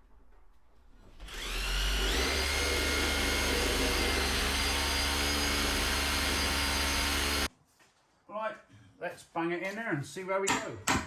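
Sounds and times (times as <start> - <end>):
electric drill into concrete: 1.2 - 7.5.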